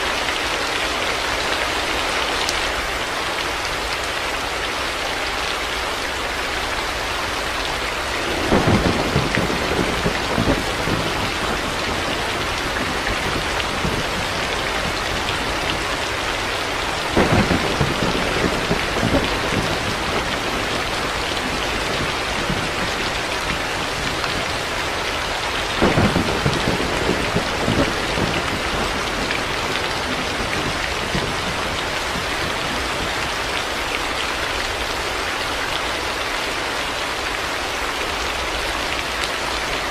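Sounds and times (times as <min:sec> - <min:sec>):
heavy rain falling: 0:00.0 - 0:39.9
thunder rolls: 0:08.2 - 0:33.4.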